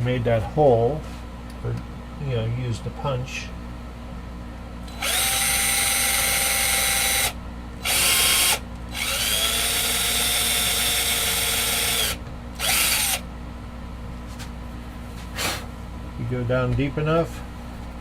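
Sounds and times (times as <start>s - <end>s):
power drill whining: 4.9s - 13.2s.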